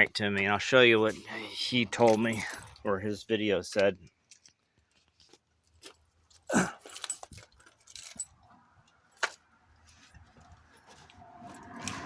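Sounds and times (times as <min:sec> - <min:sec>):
light clicks and metallic clinks: 0:01.9 - 0:02.9, 0:03.7 - 0:09.4.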